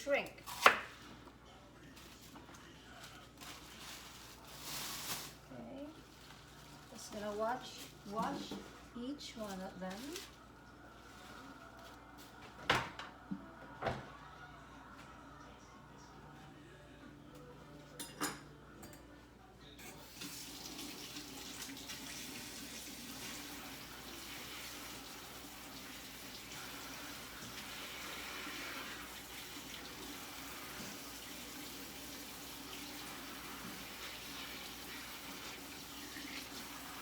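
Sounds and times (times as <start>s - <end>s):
leaves rinsed under water: 3.4s - 10.3s, 20.2s - 37.0s
tap water running into sink: 20.1s - 37.0s.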